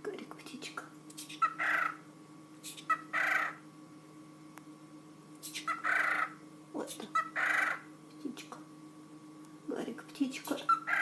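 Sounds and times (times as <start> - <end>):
cockatiel whispering words: 5.4 - 6.1.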